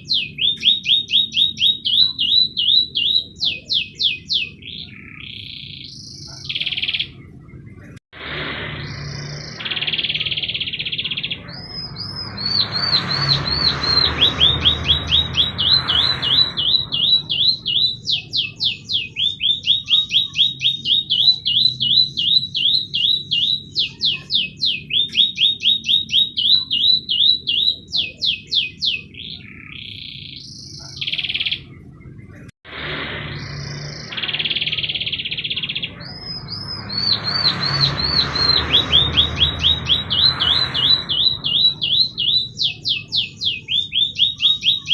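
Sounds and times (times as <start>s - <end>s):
canary singing: 0.0s - 44.9s.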